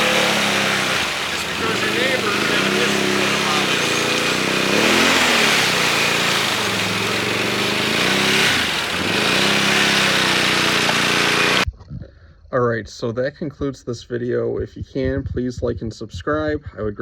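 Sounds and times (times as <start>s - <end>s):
atv engine revving: 0.0s - 11.6s.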